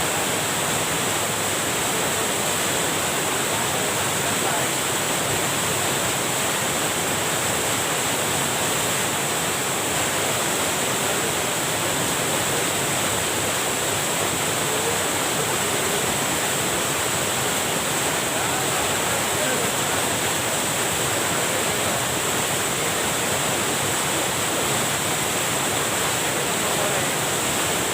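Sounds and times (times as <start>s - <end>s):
water rushing over cascade: 0.0s - 27.9s.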